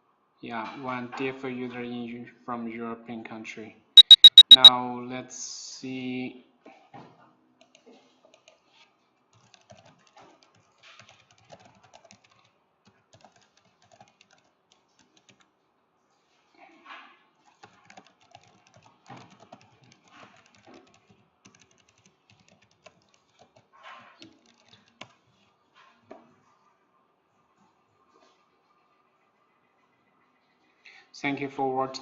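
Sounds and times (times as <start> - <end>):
typing on computer keyboard: 4.0 - 4.7, 9.3 - 15.5, 17.6 - 25.2.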